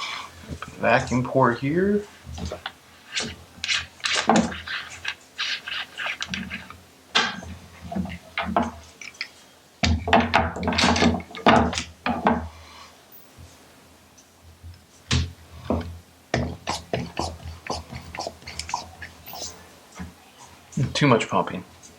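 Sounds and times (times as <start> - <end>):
hand vacuum pump strokes: 2.2 - 8.8, 16.4 - 19.7.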